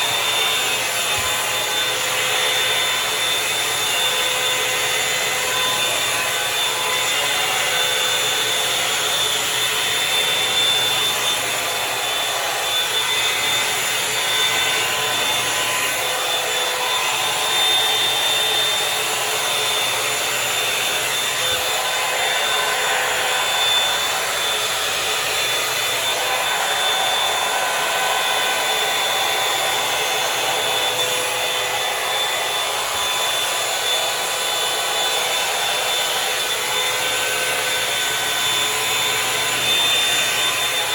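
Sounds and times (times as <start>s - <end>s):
hot-air brush dryer running: 0.0s - 40.9s.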